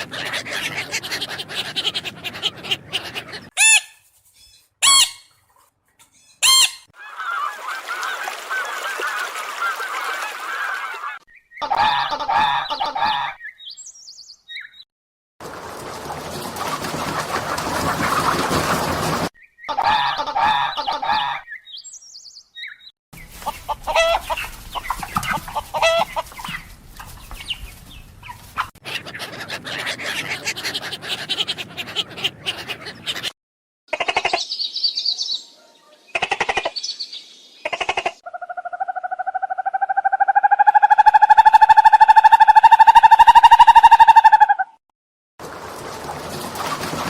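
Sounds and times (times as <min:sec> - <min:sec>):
chicken-like clucking: 0:00.0 - 0:03.8, 0:16.0 - 0:21.4, 0:23.4 - 0:26.7, 0:28.2 - 0:34.4
bird calls: 0:00.0 - 0:14.9, 0:16.5 - 0:33.3.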